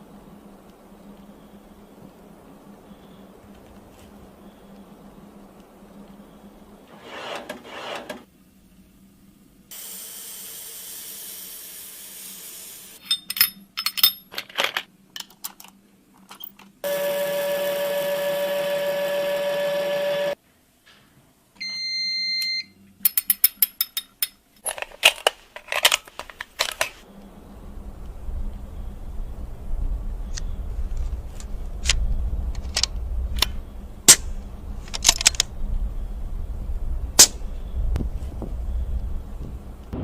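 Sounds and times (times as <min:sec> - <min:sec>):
pitched machine hum: 0:16.8 - 0:20.4, 0:27.1 - 0:40.0.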